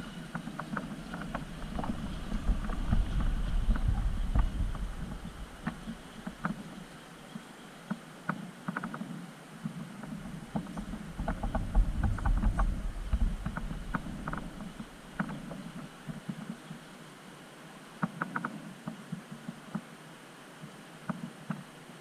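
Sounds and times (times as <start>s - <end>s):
deep rumble: 0.0s - 6.4s, 10.2s - 15.8s
low drone: 0.0s - 7.1s.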